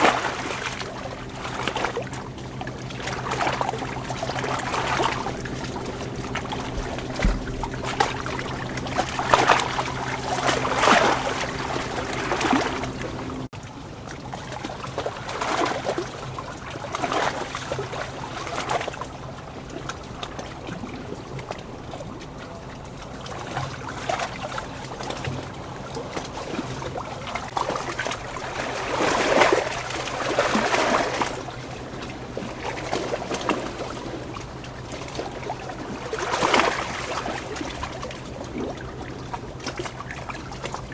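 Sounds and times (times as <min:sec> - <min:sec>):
steady low hum: 0:00.0 - 0:13.5
water trickling and splashing: 0:00.0 - 0:40.9.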